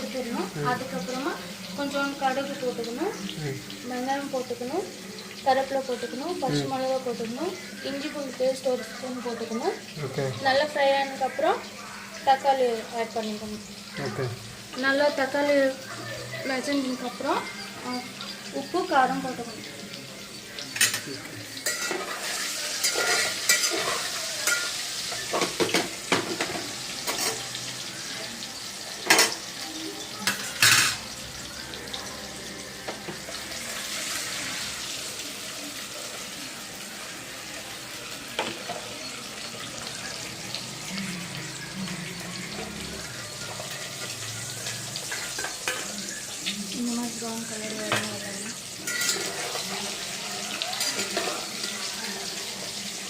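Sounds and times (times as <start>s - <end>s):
eggs sizzling in hot oil: 0.0s - 53.0s
spoon scraping a pan: 20.6s - 27.7s, 30.2s - 31.2s, 41.5s - 46.5s, 47.9s - 52.9s.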